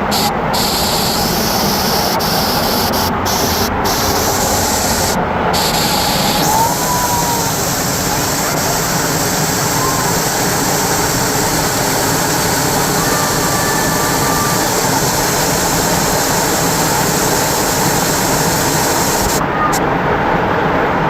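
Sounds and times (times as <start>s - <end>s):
waterfall rushing: 0.0s - 19.5s
faint thin whistles: 9.6s - 10.6s.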